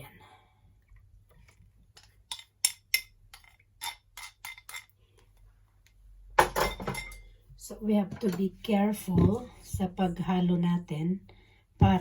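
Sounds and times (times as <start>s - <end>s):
utensil clinking against a bowl: 2.0s - 4.9s.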